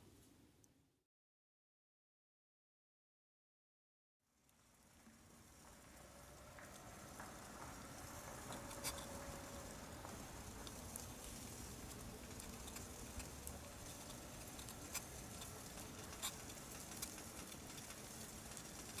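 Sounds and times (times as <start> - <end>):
faint steady hiss: 0.0 - 0.9, 4.2 - 19.0
wood fire crackling and popping: 4.4 - 19.0.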